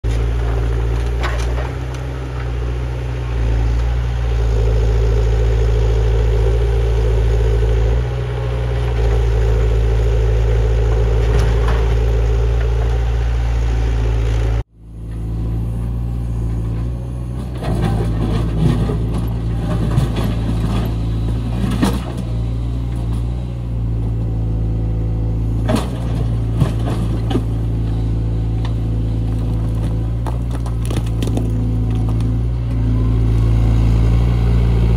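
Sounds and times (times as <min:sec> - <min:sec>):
diesel engine running under load: 0:00.0 - 0:34.9
knocks and clatter: 0:28.6 - 0:32.4.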